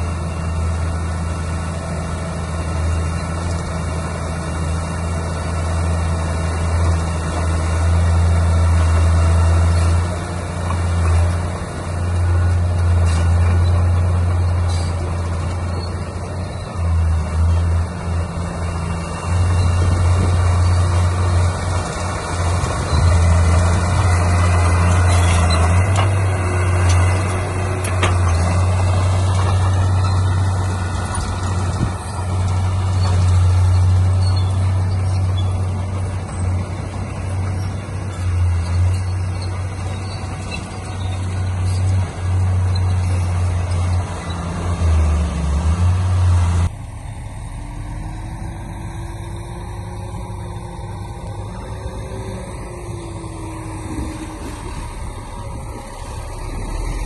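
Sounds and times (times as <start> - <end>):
diesel construction machinery engine drone: 0.0 - 57.0
brief squeal: 32.9 - 35.7.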